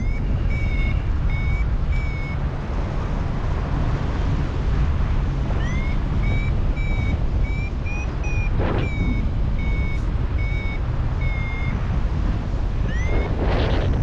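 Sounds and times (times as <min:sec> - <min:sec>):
high-pitched variometer beeping: 0:00.0 - 0:02.6, 0:05.4 - 0:12.1, 0:12.7 - 0:14.0
wind buffeting microphone: 0:00.0 - 0:14.0.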